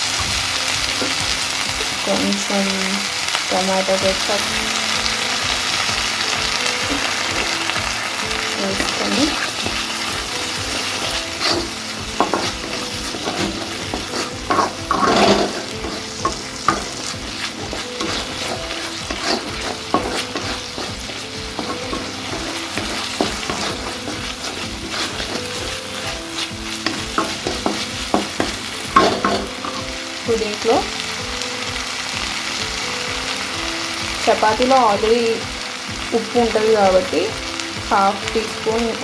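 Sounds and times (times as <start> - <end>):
food sizzling in a pan: 0.0 - 39.0
spatula scraping and tapping pan: 8.6 - 30.0.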